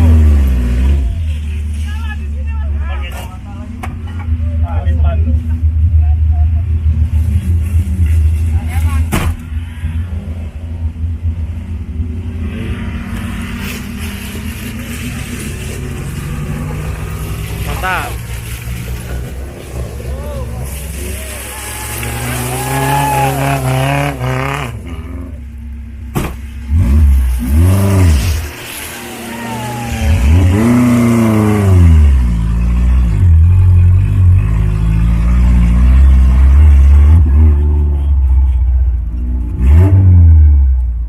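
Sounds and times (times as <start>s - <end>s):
jeep engine revving: 0.0s - 1.5s, 9.8s - 41.0s.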